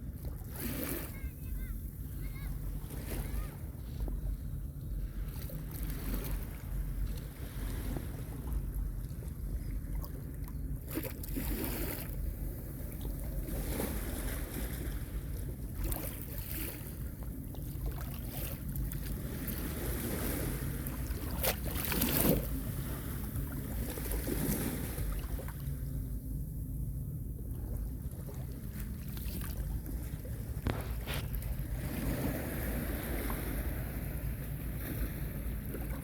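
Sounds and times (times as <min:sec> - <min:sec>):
wind rumble on microphone: 0:00.0 - 0:36.0.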